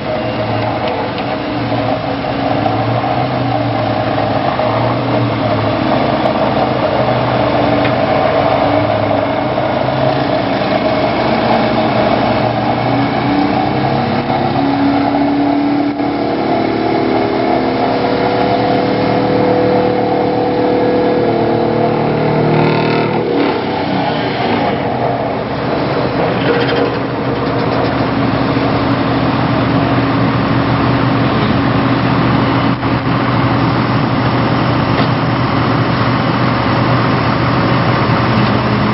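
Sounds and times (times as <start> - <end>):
excavator engine and hydraulics: 0.0 - 38.9.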